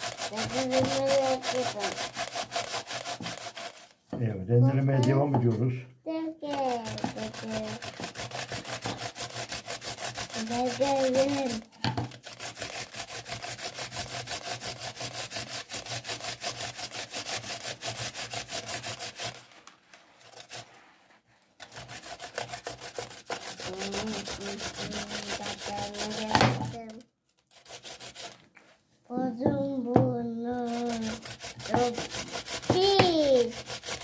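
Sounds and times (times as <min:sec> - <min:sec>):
radish rasping on grater: 0:00.0 - 0:04.0, 0:06.4 - 0:28.5, 0:30.5 - 0:34.0.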